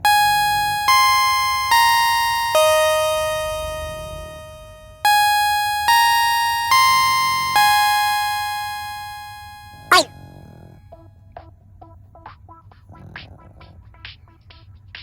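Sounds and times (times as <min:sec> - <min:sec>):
bell-like electronic melody: 0:00.0 - 0:10.4.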